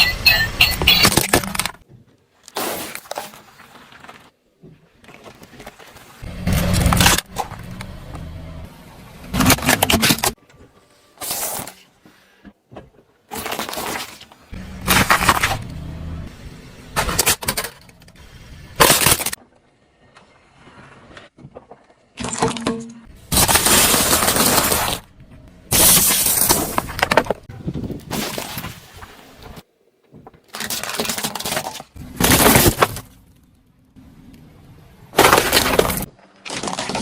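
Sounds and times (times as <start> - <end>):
objects crunching under car tyre: 1.0 - 10.4, 12.8 - 16.2, 20.4 - 33.6, 35.1 - 37.0.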